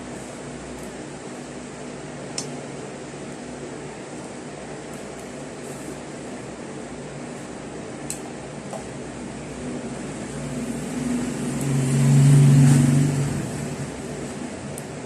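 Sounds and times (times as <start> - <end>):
steady background hum: 0.0 - 15.0
motor vehicle passing by: 10.1 - 14.4.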